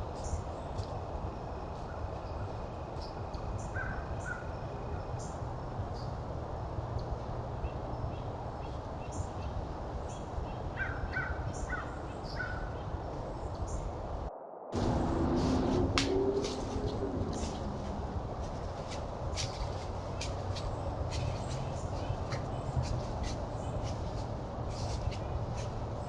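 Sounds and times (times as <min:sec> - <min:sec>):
low microphone rumble: 0:12.9 - 0:26.0.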